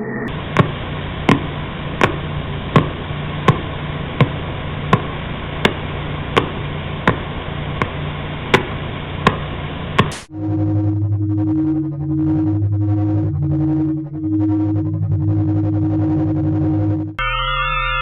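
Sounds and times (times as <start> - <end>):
steady hiss: 0.3 - 10.3.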